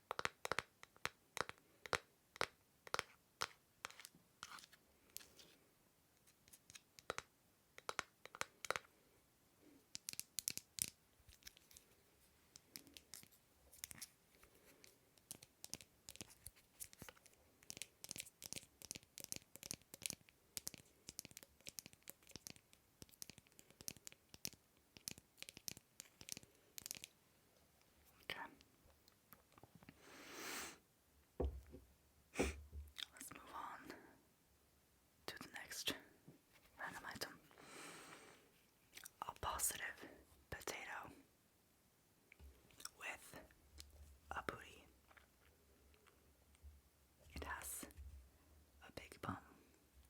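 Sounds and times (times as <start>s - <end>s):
crisp clicks and crackles: 9.9s - 27.2s.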